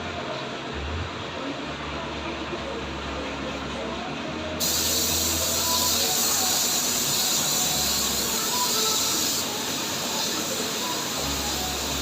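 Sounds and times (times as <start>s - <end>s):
air spray gun hissing: 4.6s - 12.0s.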